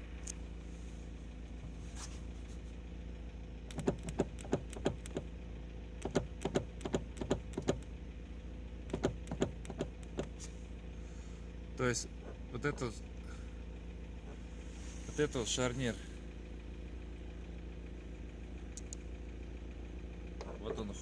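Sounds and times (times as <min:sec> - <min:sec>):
car engine running: 0:00.0 - 0:21.0
knocks and rattles over bumps: 0:06.0 - 0:07.8, 0:08.9 - 0:10.4.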